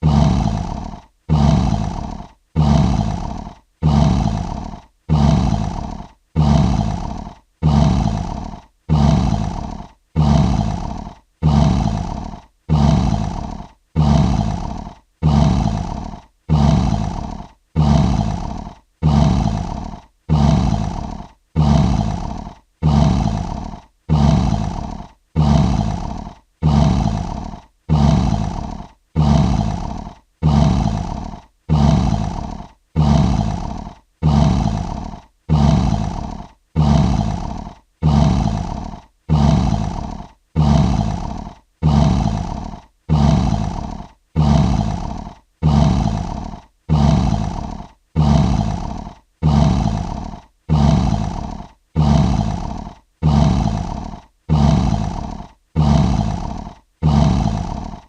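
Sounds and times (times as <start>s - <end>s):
lion roar: 0.0s - 58.0s.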